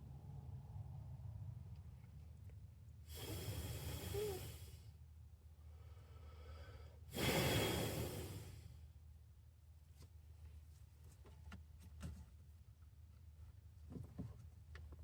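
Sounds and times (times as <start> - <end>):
person breathing out: 3.1 - 4.9, 5.7 - 8.7.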